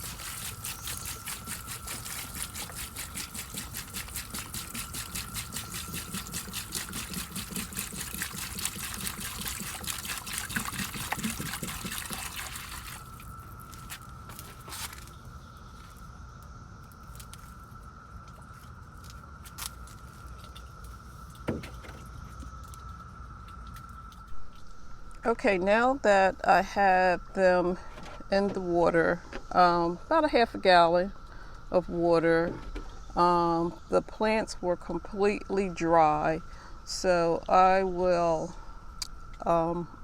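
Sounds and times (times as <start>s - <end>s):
water glugging into a tray: 0.0s - 13.3s.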